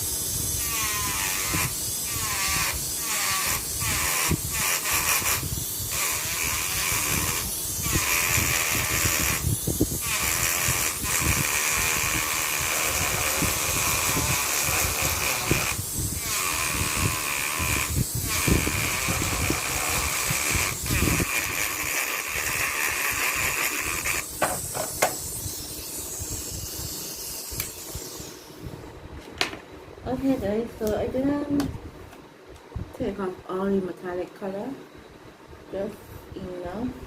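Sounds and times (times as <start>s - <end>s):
rotary tool whining: 0.0s - 28.6s.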